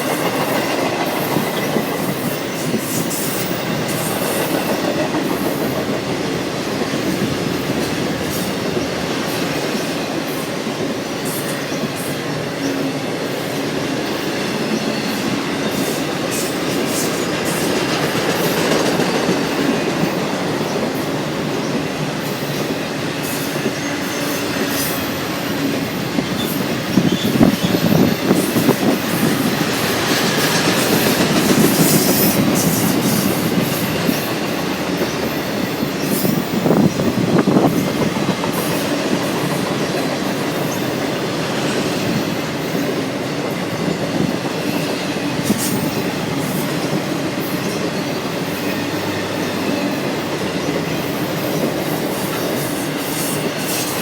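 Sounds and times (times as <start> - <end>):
train wheels rumbling on rail: 0.0 - 54.0
clatter over rail joints: 17.0 - 20.4.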